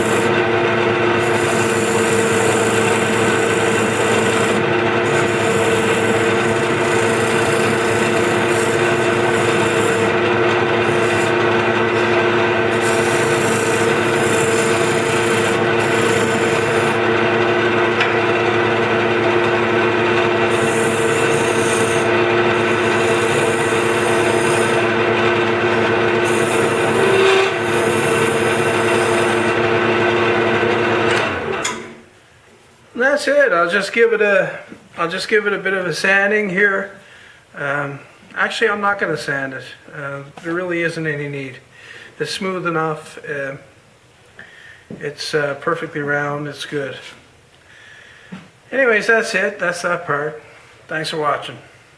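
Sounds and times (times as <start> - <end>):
chisel scraping spinning wood: 0.0 - 31.2
wood lathe humming: 0.0 - 31.9.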